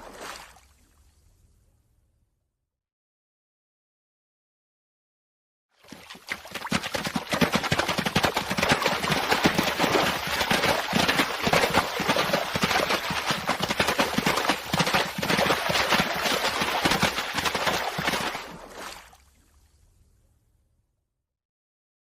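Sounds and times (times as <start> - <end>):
water splashing: 0.0 - 1.2, 5.8 - 19.7
horse hoofbeats galloping: 5.9 - 18.4.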